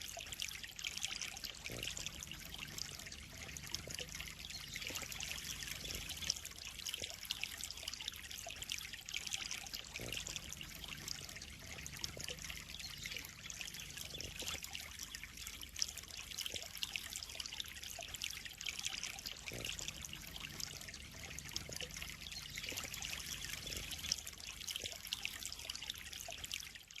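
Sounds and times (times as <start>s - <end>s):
water trickling into a pond: 0.0s - 27.0s.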